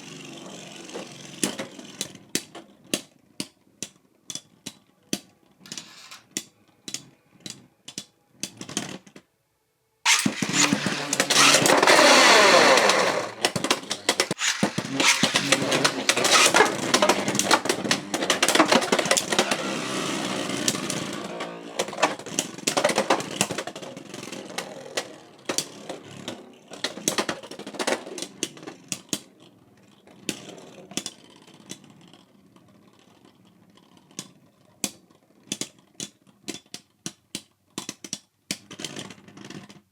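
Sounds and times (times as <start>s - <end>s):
spinning tops clattering in stadium: 5.7s - 6.3s, 10.1s - 19.8s.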